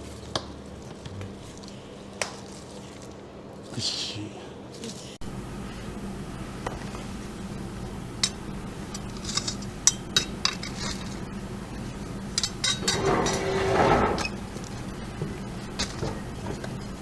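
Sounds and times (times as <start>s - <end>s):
pottery shards clinking: 8.2s - 14.8s
loud scraping rush: 12.8s - 14.4s.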